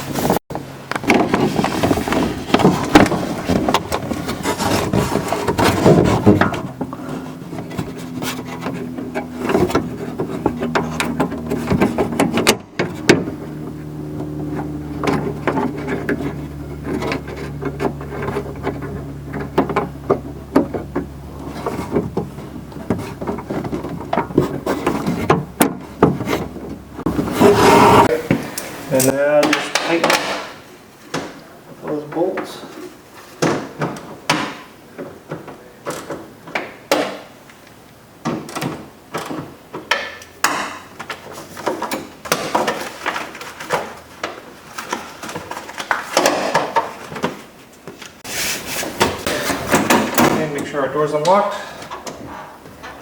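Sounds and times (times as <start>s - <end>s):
steady low hum: 0.6s - 29.2s.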